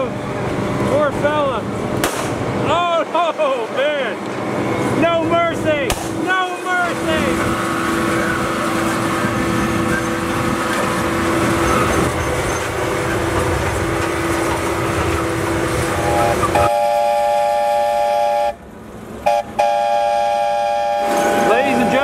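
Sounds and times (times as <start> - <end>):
train running rumble: 0.0 - 22.0
locomotive chime whistle: 16.0 - 18.6, 19.2 - 22.0.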